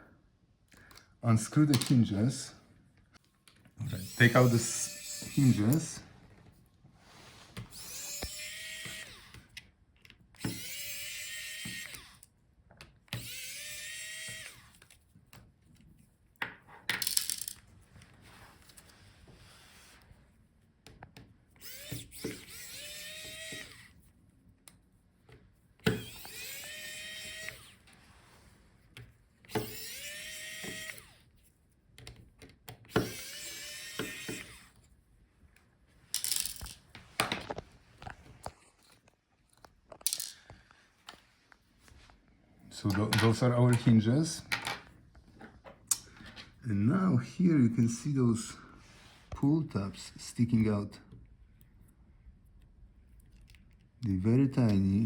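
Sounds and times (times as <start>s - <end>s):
electric screwdriver whirring: 3.8s - 6.0s, 7.6s - 9.6s, 10.4s - 12.3s, 13.1s - 15.0s, 21.6s - 24.0s, 25.8s - 27.9s, 29.5s - 31.3s, 32.7s - 34.8s
small parts handled: 13.9s - 18.9s, 35.6s - 41.2s.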